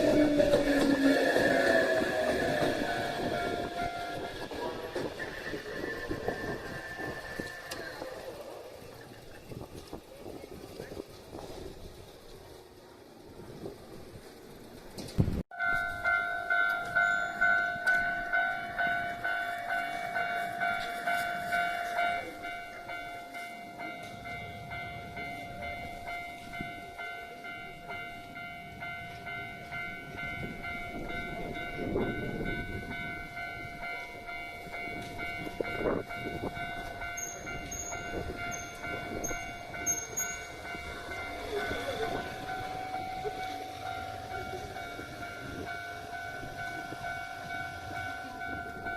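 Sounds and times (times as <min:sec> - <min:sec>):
level-crossing warning bell: 0:00.0 - 0:10.0, 0:15.5 - 0:48.9
train rumbling with clattering wheels: 0:00.0 - 0:48.9.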